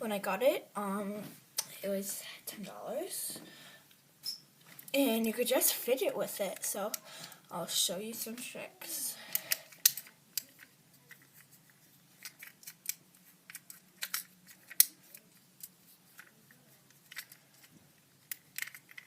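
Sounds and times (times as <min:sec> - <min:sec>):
fidget cube clicking: 0:09.3 - 0:11.5, 0:12.2 - 0:19.0.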